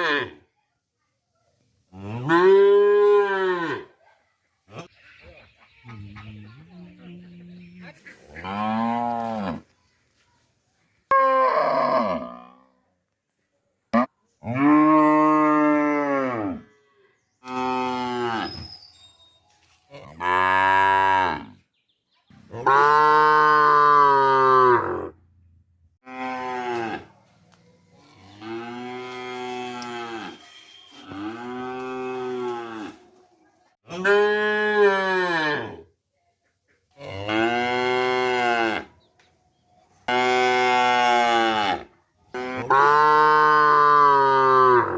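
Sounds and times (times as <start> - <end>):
cows mooing: 42.5 - 44.9.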